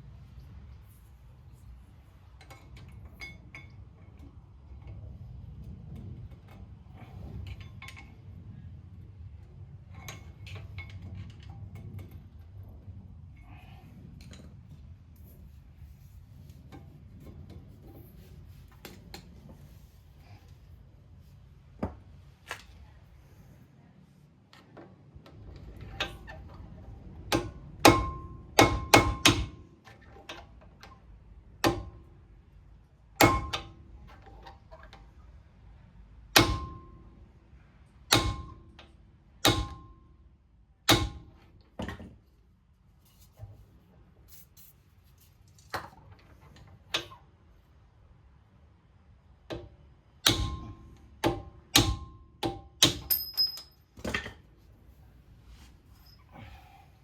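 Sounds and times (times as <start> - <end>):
hammer striking metal: 27.3 - 29.6, 36.4 - 37.0, 50.2 - 53.8.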